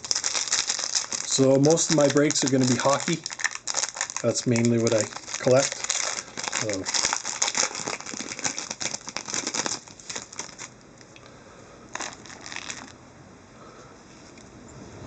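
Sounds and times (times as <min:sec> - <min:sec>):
foil wrapper crinkling: 0:00.0 - 0:10.8, 0:11.9 - 0:13.0.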